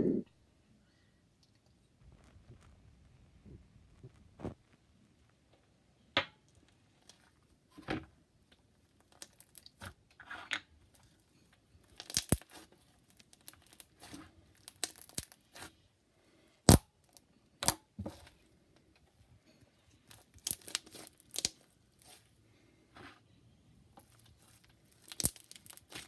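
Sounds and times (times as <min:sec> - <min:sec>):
slime squishing and crackling: 0:11.9 - 0:15.8, 0:20.0 - 0:22.3, 0:24.0 - 0:26.0.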